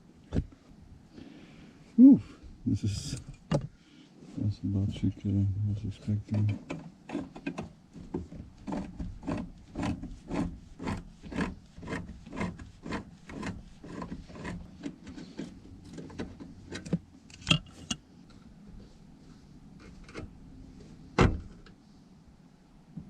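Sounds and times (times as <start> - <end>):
hand tool rasping metal: 8.7 - 15.4.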